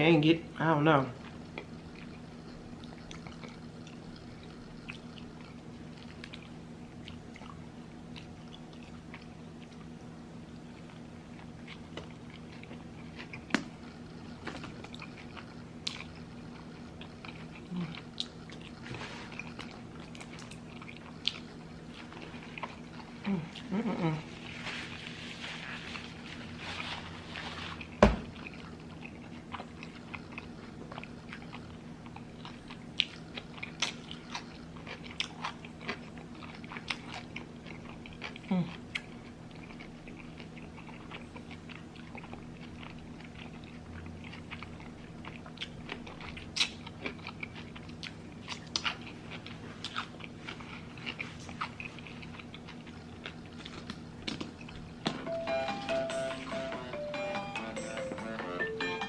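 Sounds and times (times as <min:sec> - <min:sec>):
low steady hum: 0:00.0 - 0:59.0
chewing and biting food: 0:01.2 - 0:55.1
mouth clicks and crunches: 0:11.5 - 0:24.6, 0:27.7 - 0:55.0.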